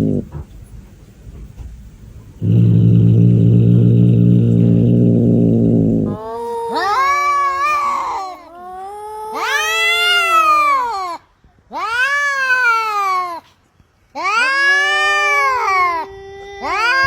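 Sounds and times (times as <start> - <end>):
cat meowing: 14.2 - 17.0.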